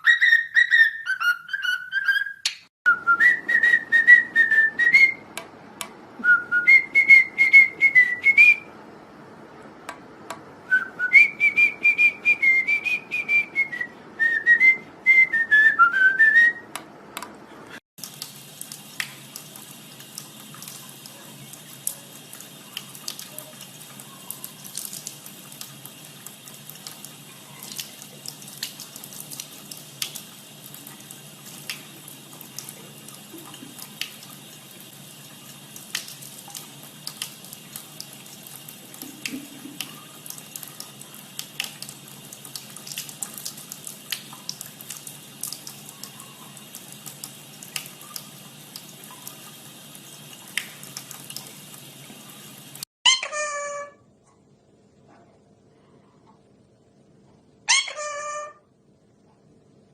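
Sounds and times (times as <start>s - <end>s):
water running: 10.6s - 52.9s
small splashes and drips: 18.0s - 52.9s.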